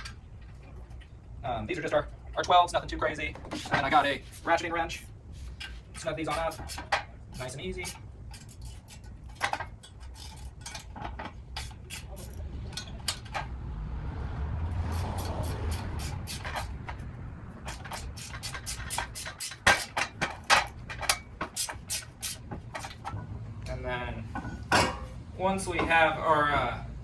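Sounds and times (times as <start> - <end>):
ratcheting wrench clicking: 3.6 - 13.4, 14.9 - 17.0, 17.6 - 23.2
soft rushing noise: 11.7 - 19.2.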